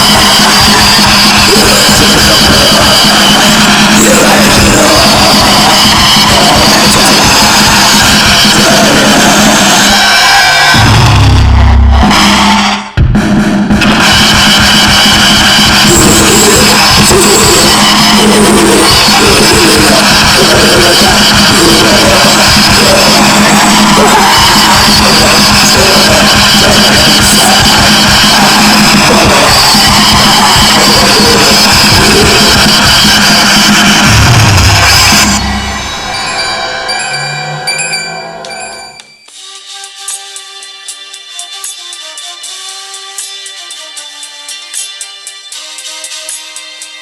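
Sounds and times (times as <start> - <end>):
fast dense drum kit: 0.0 - 36.5
heavy rock music: 0.0 - 39.0.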